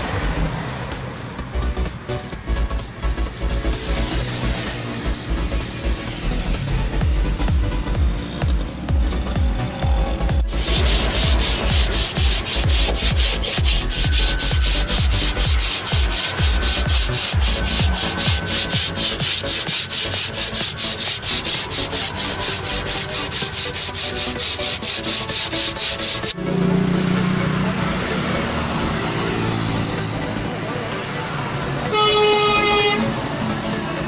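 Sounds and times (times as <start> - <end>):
sandpaper rubbing paintwork: 3.6 - 7.6, 9.0 - 26.4.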